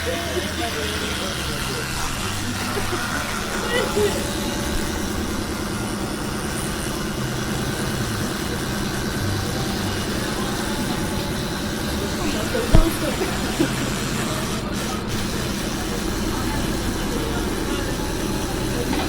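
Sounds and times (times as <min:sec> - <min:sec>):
thump: 0:12.7 - 0:13.1.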